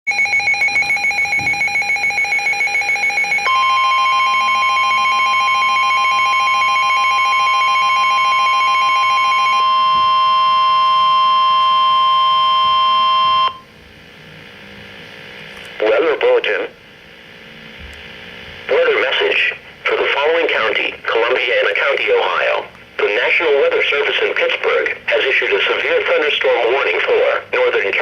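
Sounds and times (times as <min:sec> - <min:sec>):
fast pulsing alert beep: 0:00.1 - 0:08.0
steady warning alert tone: 0:00.1 - 0:13.7.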